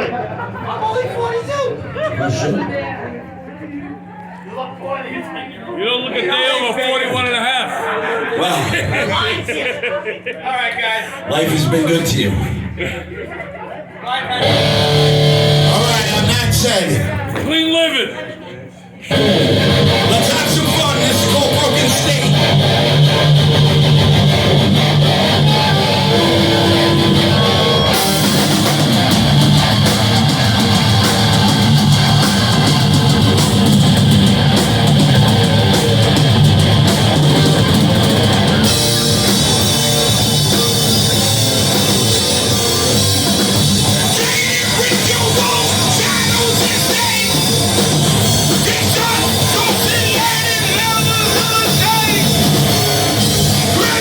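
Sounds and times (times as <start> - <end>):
live rock band playing: 14.4 - 16.7, 19.1 - 54.0.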